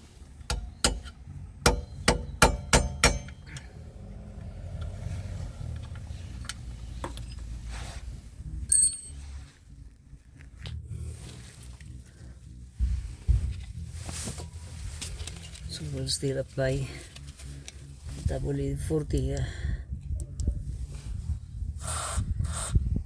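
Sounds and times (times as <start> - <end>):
hammer tapping on metal: 1.7 - 3.4
high metallic ring: 8.7 - 9.2.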